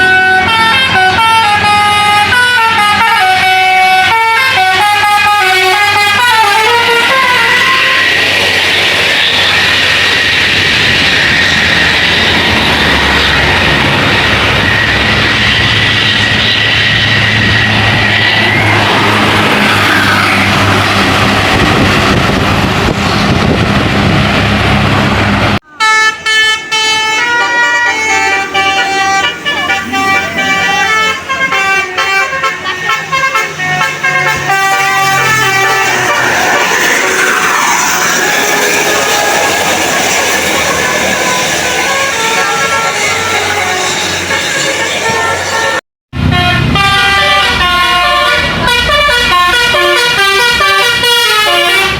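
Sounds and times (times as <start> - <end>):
bus engine passing: 0.0 - 51.9
high-pitched whine: 6.7 - 25.6, 32.8 - 45.8.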